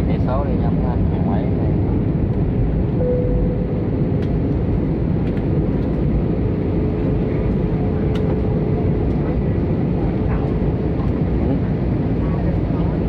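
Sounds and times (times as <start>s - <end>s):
airplane engines rumbling: 0.0s - 13.0s
faint steady whine: 3.0s - 4.6s.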